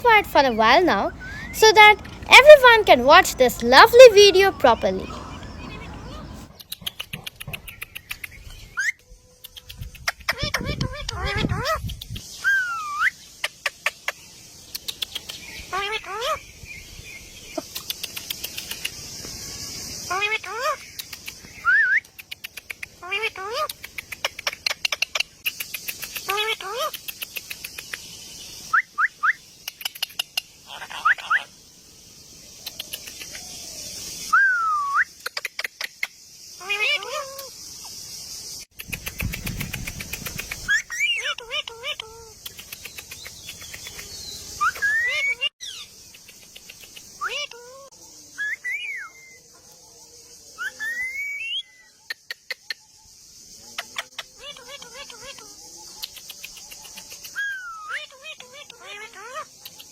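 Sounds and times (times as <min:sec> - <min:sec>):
rising chirps: 0:00.0 - 0:06.8
parrots chattering: 0:00.0 - 0:08.9, 0:22.3 - 0:27.8, 0:29.7 - 0:31.5, 0:36.6 - 0:37.5, 0:38.8 - 0:47.9, 0:53.8 - 0:59.9
high insect hiss: 0:00.0 - 0:59.9
parrot squawks: 0:00.6 - 0:06.6, 0:30.7 - 0:31.5
parrot whistled call: 0:01.0 - 0:01.8, 0:12.4 - 0:13.2, 0:34.3 - 0:35.2, 0:44.5 - 0:45.8, 0:48.4 - 0:49.4, 0:50.6 - 0:52.0, 0:57.4 - 0:58.1
steady high hiss: 0:23.7 - 0:34.4, 0:35.1 - 0:41.2
sharp clicks: 0:42.4 - 0:44.1.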